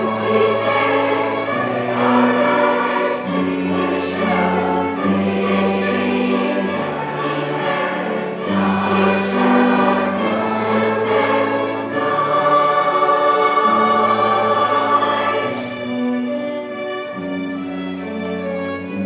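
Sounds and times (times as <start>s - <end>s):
choir singing held chords: 0.0s - 16.6s.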